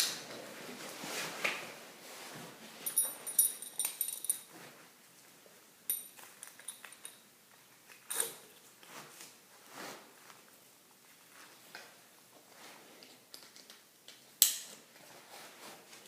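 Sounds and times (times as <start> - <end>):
soft rustling: 8.5 - 13.3.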